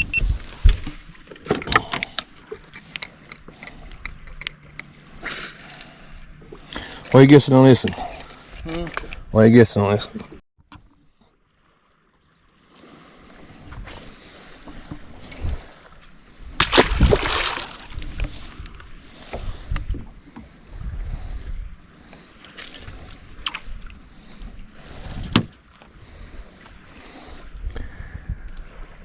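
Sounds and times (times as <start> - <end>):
knocks and bumps on a boat: 25.1 - 25.6.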